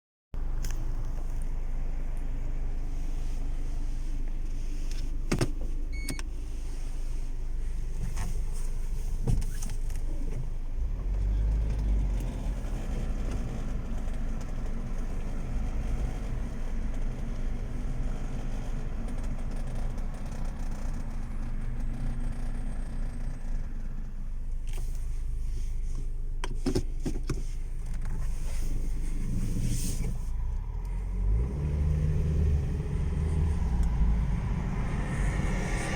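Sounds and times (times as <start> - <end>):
road and engine rumble: 0.4 - 35.9.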